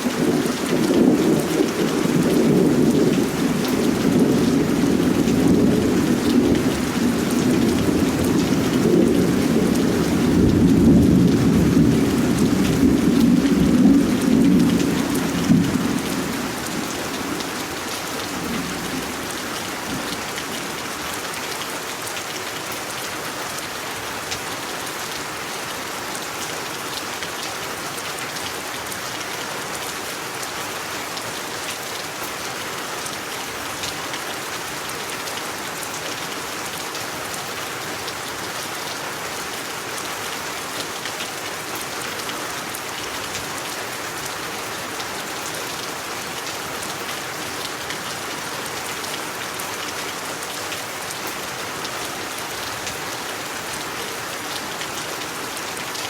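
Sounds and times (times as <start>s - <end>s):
low rumble of thunder: 0.0s - 21.1s
steady rain falling: 0.0s - 56.0s.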